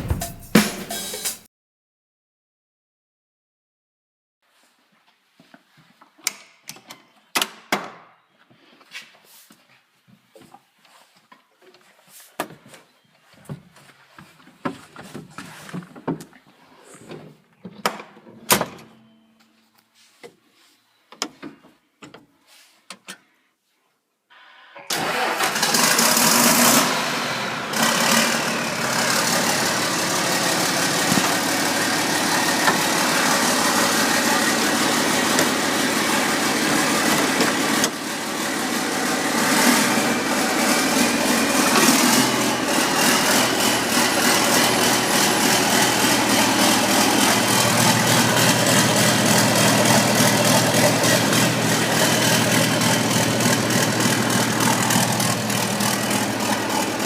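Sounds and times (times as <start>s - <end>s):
motor running: 27.1s - 57.0s.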